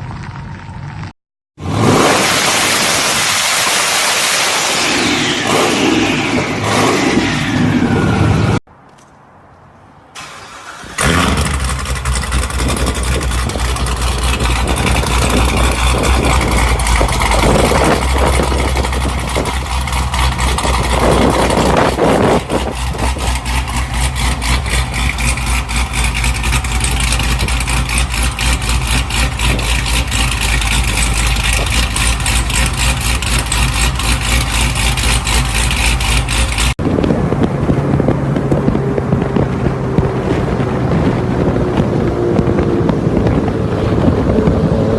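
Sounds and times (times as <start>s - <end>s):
different engine sound: 0.0s - 9.2s, 10.2s - 44.9s
sports car engine running: 11.0s - 44.9s.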